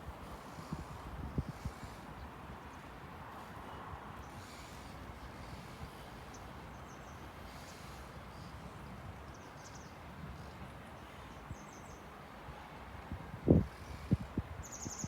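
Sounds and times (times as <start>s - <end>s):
low outdoor background noise: 0.0s - 15.0s
faint high bird chirps: 14.6s - 15.0s.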